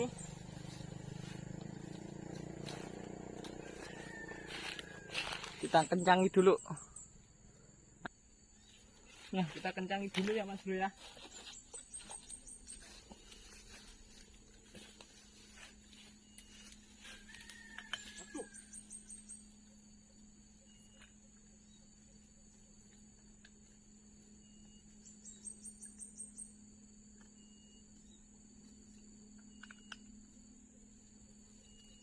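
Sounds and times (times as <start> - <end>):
steady low hum: 0.0 - 17.4
high-pitched insect chirping: 0.0 - 32.0.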